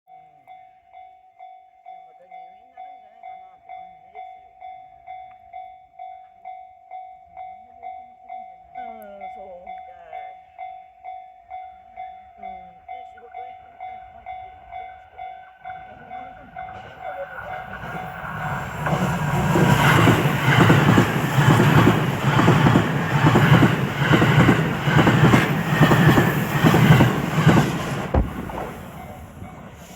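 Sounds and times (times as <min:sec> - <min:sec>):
level crossing warning bell: 0:00.1 - 0:28.0
train wheels clacking over rail joints: 0:16.6 - 0:29.9.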